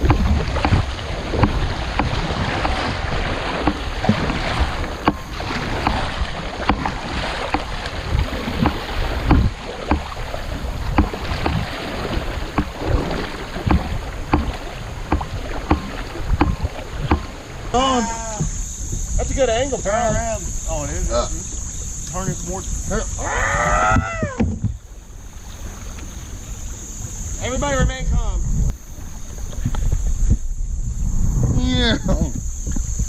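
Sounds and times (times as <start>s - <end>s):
paddle knocks and splashes: 0.0s - 19.1s, 23.8s - 26.4s
water rushing: 0.0s - 33.0s.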